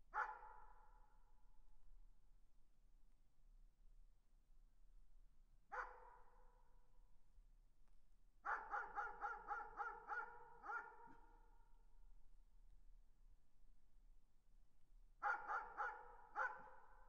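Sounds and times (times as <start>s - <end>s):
distant dog barking: 0.2s - 0.5s, 8.5s - 11.2s, 15.2s - 16.8s.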